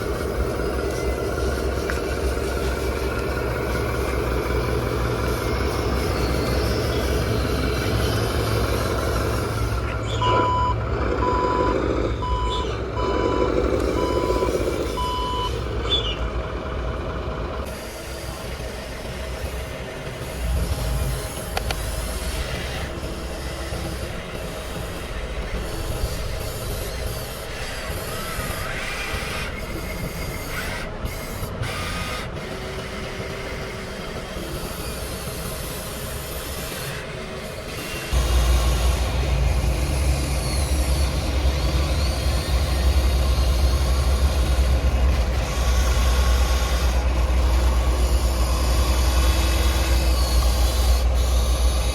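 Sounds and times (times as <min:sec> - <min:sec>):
toy truck engine sound running: 0:00.0 - 0:51.9
reversing beeper: 0:10.1 - 0:16.1.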